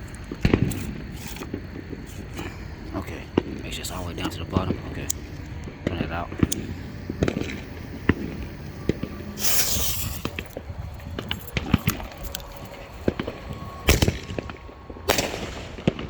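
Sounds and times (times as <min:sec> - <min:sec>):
firework fuse hissing: 0:00.0 - 0:16.0
loud hiss: 0:00.5 - 0:10.6
firework launch thump: 0:05.8 - 0:10.5.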